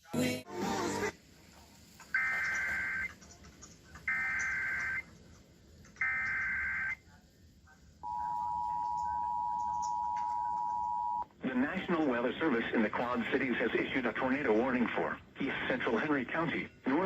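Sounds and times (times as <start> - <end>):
two-tone attention signal: 2.2 - 3.1, 4.1 - 5.0, 8.0 - 11.3.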